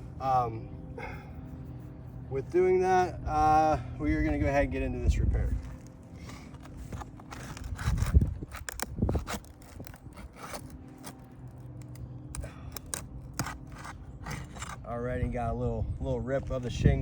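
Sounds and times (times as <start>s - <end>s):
shingles scraping and clicking: 5.6s - 14.9s
brittle shingles tearing: 5.7s - 14.9s.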